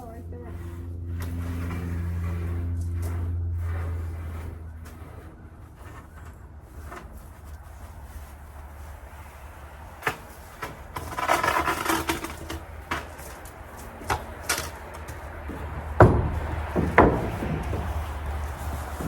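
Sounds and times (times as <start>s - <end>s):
low rumble: 0.0s - 9.9s
rustling: 0.0s - 19.0s
knocks and bangs on siding: 9.9s - 19.0s.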